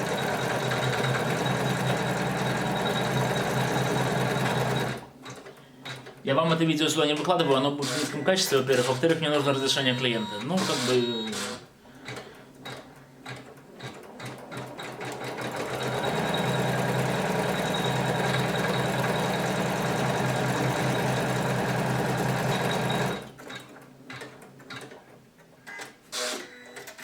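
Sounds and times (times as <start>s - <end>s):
embroidery machine stitching: 0.0s - 6.2s, 10.5s - 25.0s.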